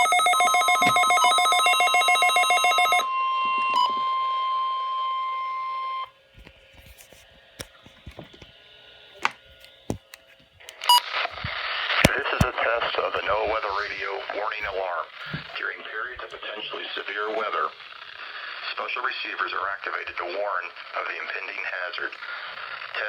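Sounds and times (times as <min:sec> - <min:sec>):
steady alarm tone: 0:00.0 - 0:03.4.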